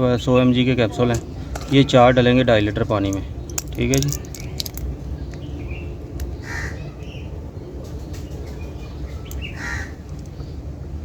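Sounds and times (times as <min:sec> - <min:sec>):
crow cawing: 0:06.4 - 0:06.9, 0:09.5 - 0:10.0.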